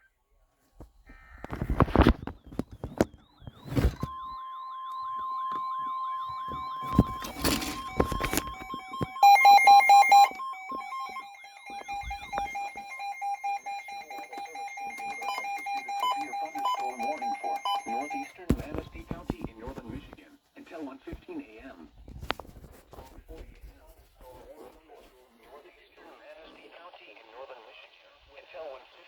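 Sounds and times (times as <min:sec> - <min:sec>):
loud rapid beeps: 0:03.7 - 0:18.4
steady high tone: 0:03.9 - 0:19.2.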